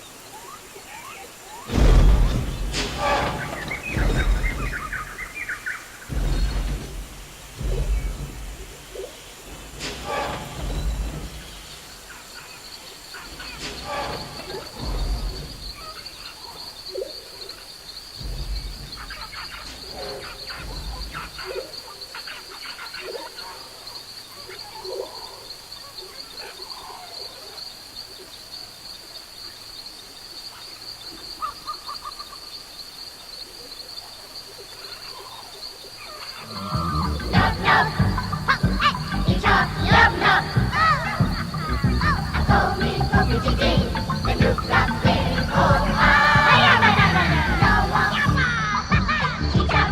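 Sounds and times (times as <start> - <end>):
croaking calls and chirps: 0.0 - 49.9
low thuds: 1.7 - 12.2, 13.6 - 16.1, 18.2 - 21.6, 36.8 - 49.8
burst of cries and rumbling: 1.7 - 12.6, 13.3 - 16.2, 18.2 - 21.8, 36.5 - 49.8.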